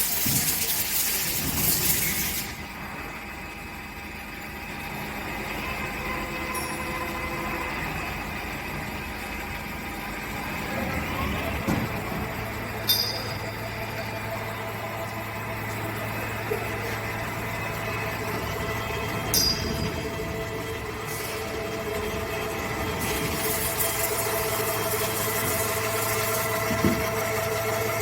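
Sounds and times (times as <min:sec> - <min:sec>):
machine hum with held tones: 0:02.0 - 0:28.0
sharp metallic clinks: 0:12.8 - 0:13.5.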